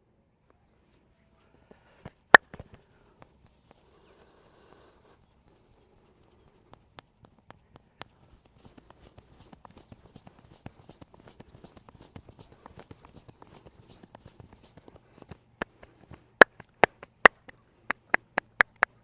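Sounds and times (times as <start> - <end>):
hands rubbing skin: 1.4 - 19.0
light hand taps: 1.6 - 4.9, 5.5 - 19.0.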